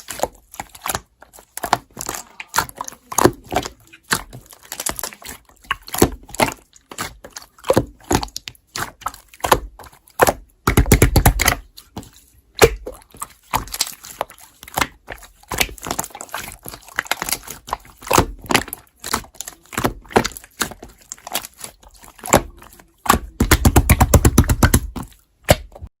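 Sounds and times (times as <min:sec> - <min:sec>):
slime squelching and popping: 0:00.0 - 0:25.9.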